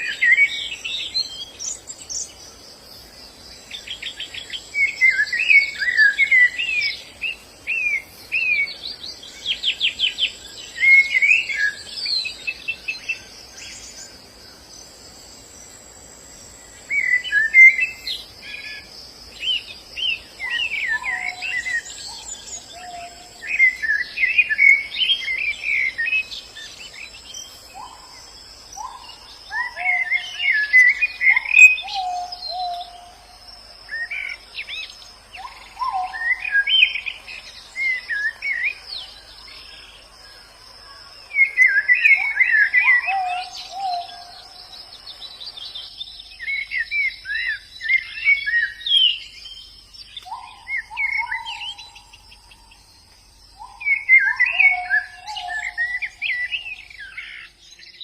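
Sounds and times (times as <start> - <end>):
birds twittering and chirping: 0.0 - 58.0.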